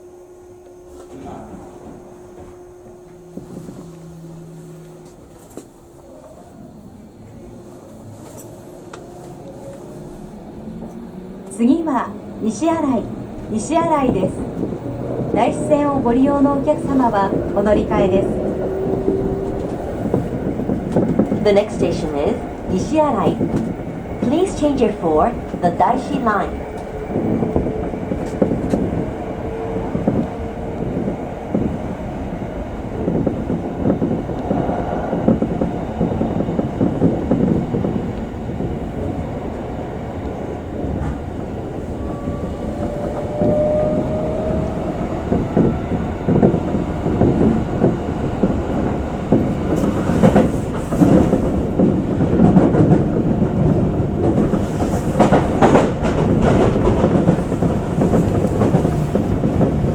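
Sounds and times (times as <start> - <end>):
train wheels and motors rumbling: 0.0 - 59.9
wheels clicking over rail joints: 8.1 - 29.1, 33.0 - 59.9.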